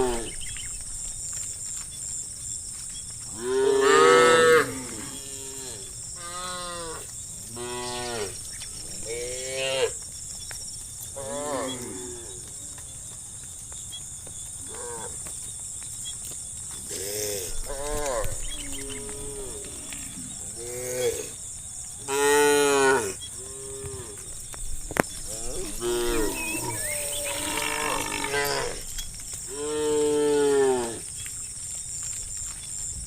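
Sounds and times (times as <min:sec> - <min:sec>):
cows mooing: 0:03.4 - 0:07.0, 0:16.9 - 0:21.4, 0:22.1 - 0:24.2, 0:25.2 - 0:28.9.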